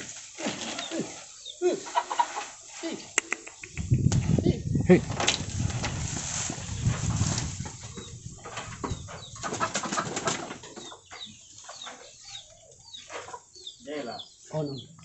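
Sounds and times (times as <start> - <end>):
chickens chirping and clucking: 0.5 - 15.0
rustling noise: 3.7 - 10.8.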